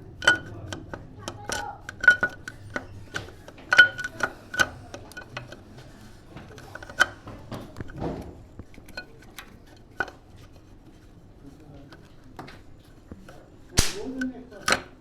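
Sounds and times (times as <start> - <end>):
metallic clicks of hand tools: 13.8 - 14.2.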